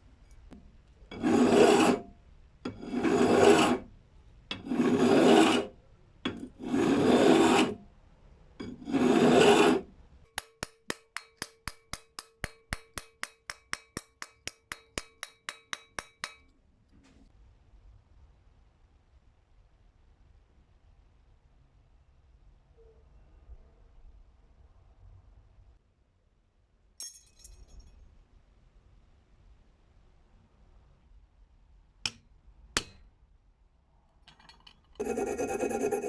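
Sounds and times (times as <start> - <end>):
file strokes on steel: 1.1 - 2.1, 2.7 - 3.9, 4.5 - 7.8, 8.6 - 9.9, 35.0 - 36.0.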